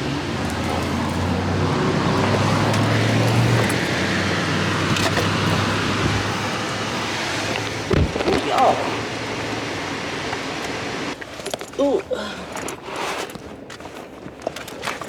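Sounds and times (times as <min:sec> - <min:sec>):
car engine running: 0:00.0 - 0:11.2
road noise: 0:00.0 - 0:13.7.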